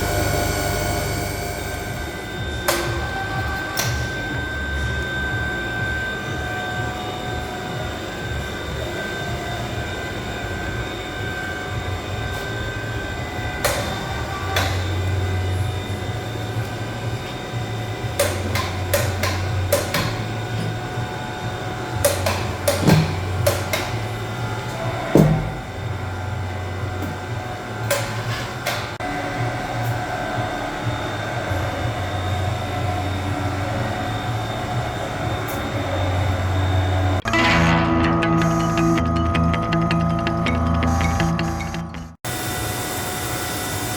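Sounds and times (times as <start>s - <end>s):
milling machine spindle whine: 0.0s - 37.3s, 38.3s - 43.9s
low machine rumble: 0.0s - 41.4s
sharp clicks and knocks: 18.2s - 20.7s, 22.0s - 24.0s.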